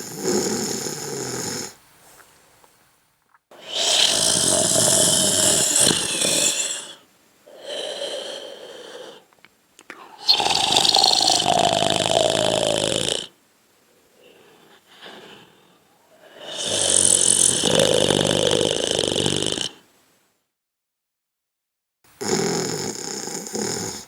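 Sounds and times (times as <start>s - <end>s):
person snoring: 0.0s - 1.8s, 3.6s - 9.3s, 9.9s - 13.4s, 14.1s - 19.9s, 22.2s - 24.0s.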